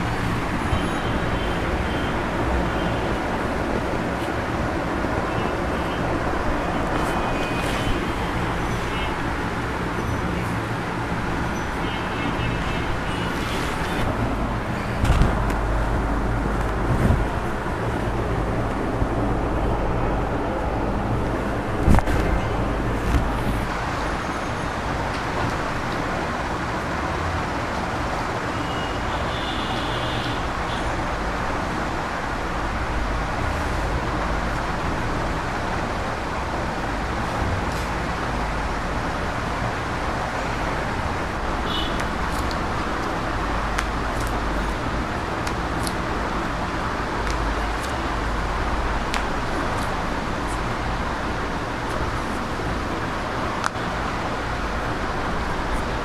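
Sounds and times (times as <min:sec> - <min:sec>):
steady rushing noise with hum: 0:00.0 - 0:28.4.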